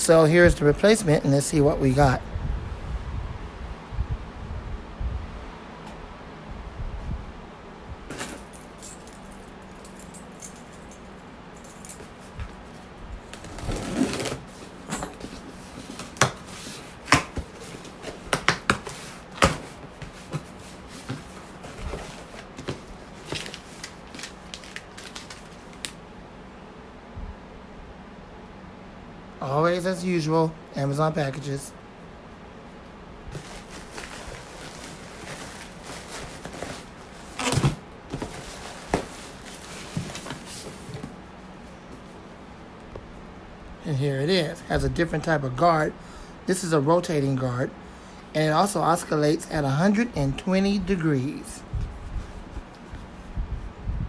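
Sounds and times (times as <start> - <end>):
packaging clicks crackles and rustles: 13.2 - 26.0, 33.3 - 41.2.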